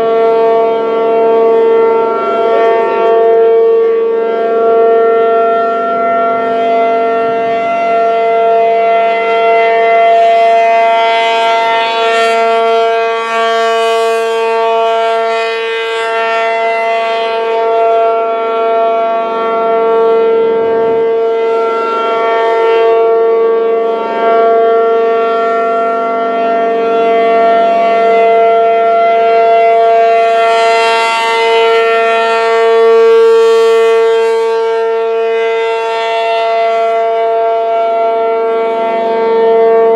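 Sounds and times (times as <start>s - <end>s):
outdoor warning siren steady tone: 0.0s - 39.9s.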